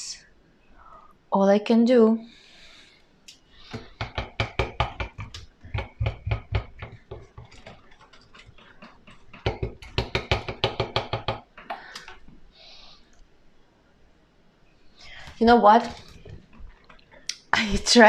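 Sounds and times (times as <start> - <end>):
rapid sharp knocks: 3.7 - 12.2.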